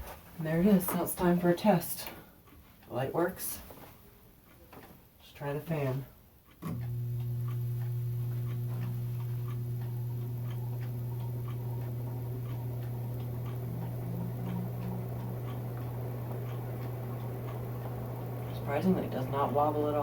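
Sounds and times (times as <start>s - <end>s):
ceiling fan motor hum: 0.3s - 20.0s
fan ticking: 5.4s - 20.0s.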